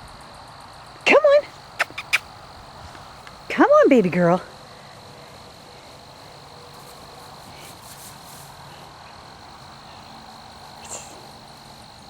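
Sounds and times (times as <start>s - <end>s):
insects trilling: 0.0s - 12.0s
soft rustles: 6.6s - 8.9s.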